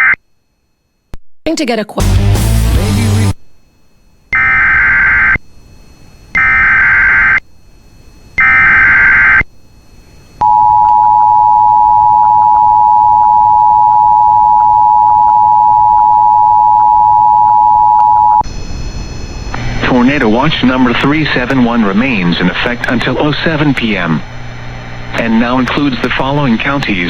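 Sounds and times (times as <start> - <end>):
digital data bursts: 2.5 - 3.4.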